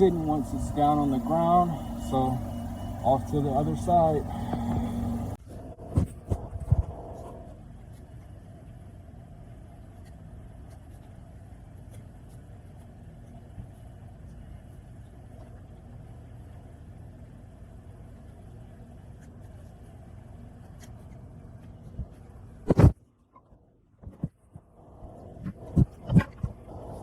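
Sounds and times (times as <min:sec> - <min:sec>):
low mechanical hum: 0:00.0 - 0:27.0.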